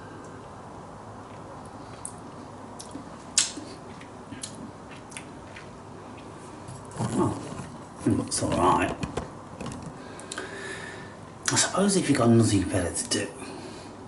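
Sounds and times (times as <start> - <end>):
steady low background hum: 0.0 - 14.0
wet mouth clicks and smacks: 2.8 - 5.7.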